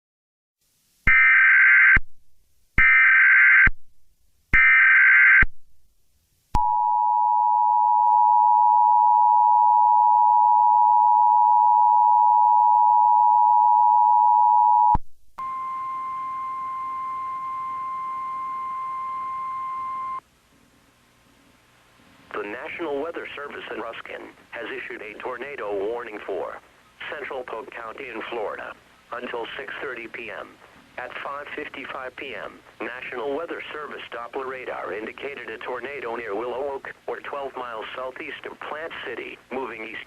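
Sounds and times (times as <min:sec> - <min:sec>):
steady alarm tone: 0:06.6 - 0:20.2
two-tone attention signal: 0:06.6 - 0:20.2.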